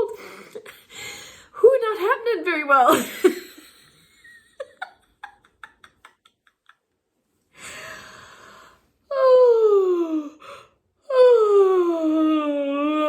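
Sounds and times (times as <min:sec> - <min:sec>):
long breath: 0:00.9 - 0:01.6, 0:07.5 - 0:08.9
person laughing: 0:03.0 - 0:06.9.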